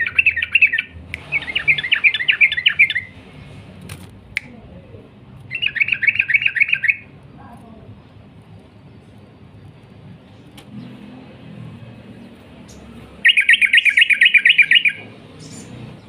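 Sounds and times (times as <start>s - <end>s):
bulbul singing: 0.0s - 3.6s, 5.5s - 7.2s, 12.1s - 16.0s
sharp clicks: 1.1s - 1.6s, 3.8s - 4.6s.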